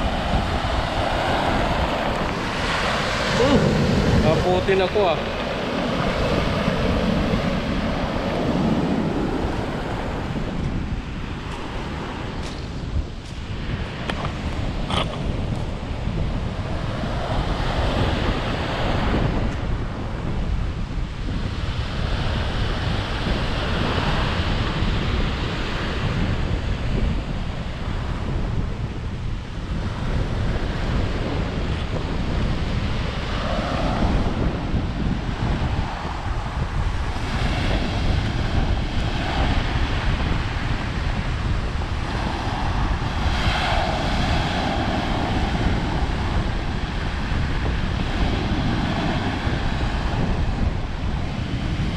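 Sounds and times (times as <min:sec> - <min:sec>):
ocean waves breaking: 0:00.0 - 0:20.2, 0:29.6 - 0:51.9
wind buffeting microphone: 0:00.0 - 0:51.9.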